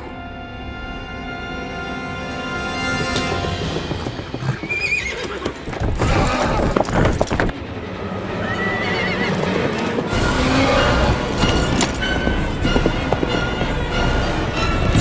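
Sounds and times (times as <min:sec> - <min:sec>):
film score music: 0:00.0 - 0:15.0
horse hooves clattering: 0:02.2 - 0:15.0
horse whinnying: 0:03.0 - 0:07.5, 0:08.4 - 0:12.0.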